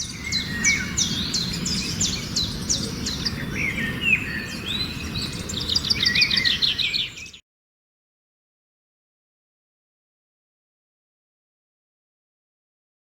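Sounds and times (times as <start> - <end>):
birds chirping: 0.0 - 7.4.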